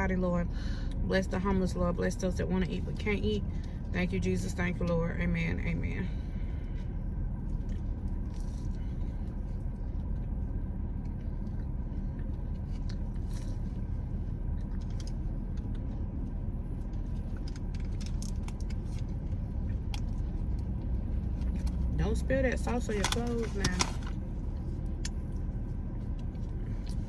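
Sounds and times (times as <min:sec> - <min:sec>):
car engine rumble inside cabin: 0:00.0 - 0:27.0
food packaging rustling: 0:22.8 - 0:24.2.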